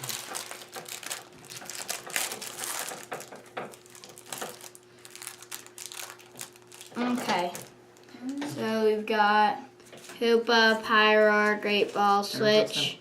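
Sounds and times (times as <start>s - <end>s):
packaging crinkling and rustling: 0.0s - 8.4s.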